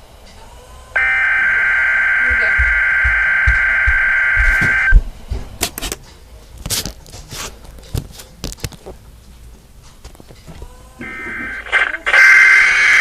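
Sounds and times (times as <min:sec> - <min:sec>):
electronic alert tone: 0:01.0 - 0:05.0.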